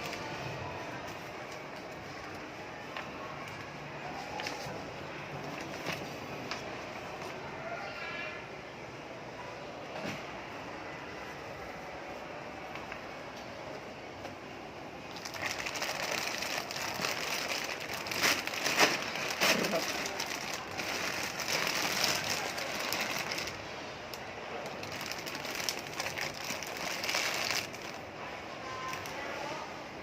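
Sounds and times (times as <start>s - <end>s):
plastic bags rustling: 15.1s - 28.2s.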